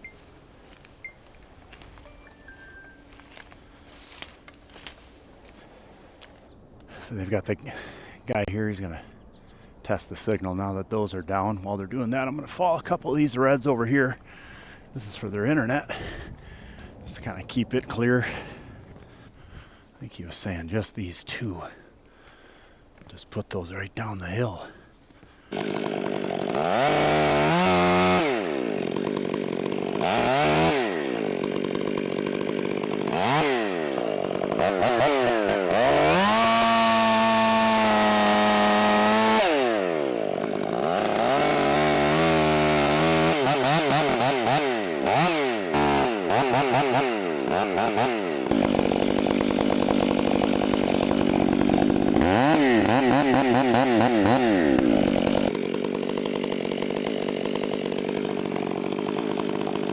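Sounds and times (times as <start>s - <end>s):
chainsaw engine revving: 1.7s - 6.3s, 25.5s - 59.9s.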